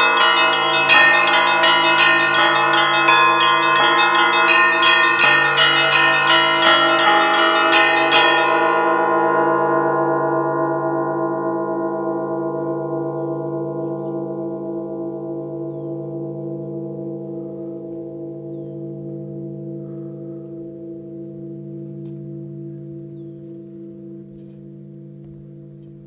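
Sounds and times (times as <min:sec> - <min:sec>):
church bells ringing: 0:00.0 - 0:26.0
deep hum of large bells: 0:00.0 - 0:26.0.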